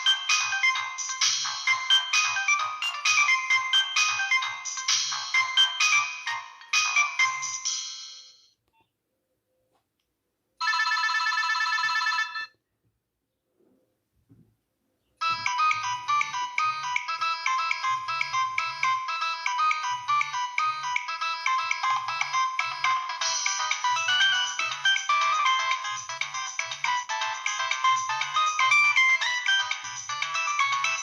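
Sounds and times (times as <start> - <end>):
fast-pulsing trill ringtone: 0.0 - 8.4, 15.2 - 31.0
ringtone melody with pulsing bass: 0.0 - 8.5, 15.2 - 31.0.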